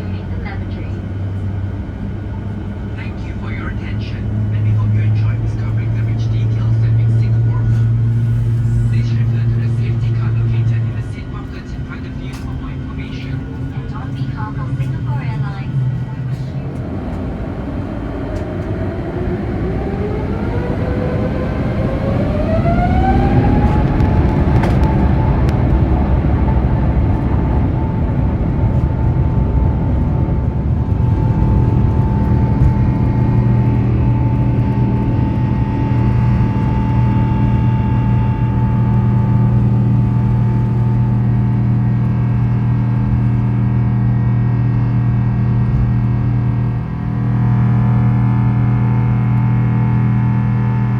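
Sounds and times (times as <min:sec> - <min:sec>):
jet engine rumble: 0:00.0 - 0:50.9
jet engine whine: 0:00.0 - 0:50.9.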